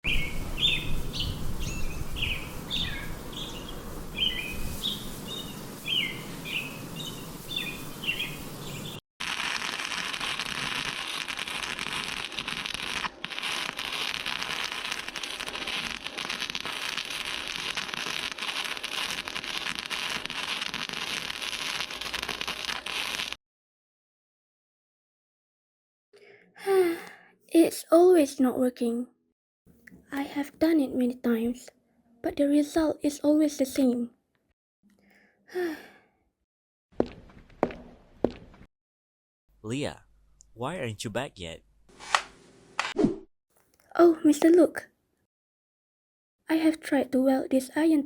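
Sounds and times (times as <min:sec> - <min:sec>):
birds chirping: 0:00.0 - 0:09.0
welding arc crackling hiss: 0:00.8 - 0:23.4.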